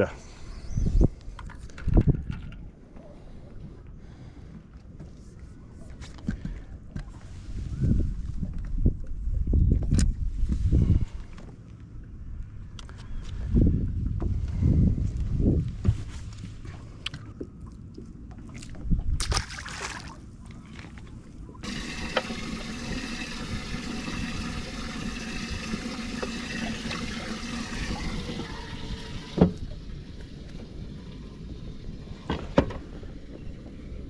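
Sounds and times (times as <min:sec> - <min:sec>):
water splashing and trickling: 0:16.5 - 0:33.3.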